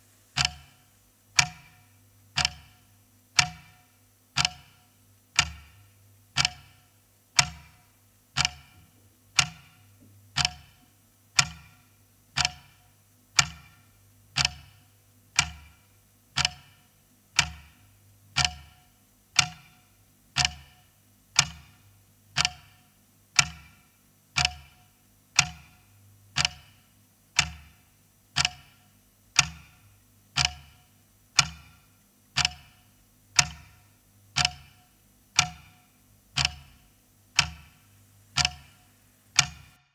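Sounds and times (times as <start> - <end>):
clock ticking: 0.4 - 39.9.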